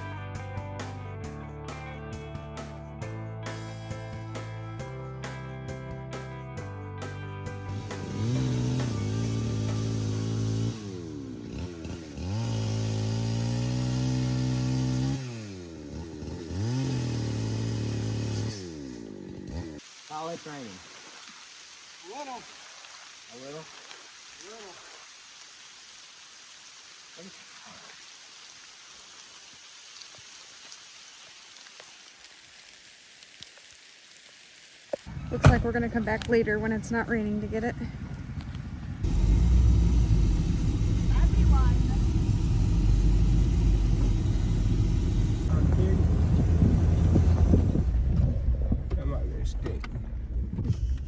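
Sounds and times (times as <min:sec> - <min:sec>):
chainsaw engine revving: 0:07.7 - 0:19.8, 0:39.0 - 0:47.8
light rain falling: 0:18.6 - 0:47.1.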